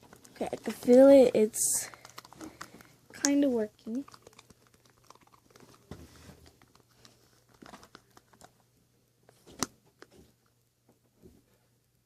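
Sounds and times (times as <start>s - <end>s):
slime squished with crackling clicks: 2.0s - 5.8s.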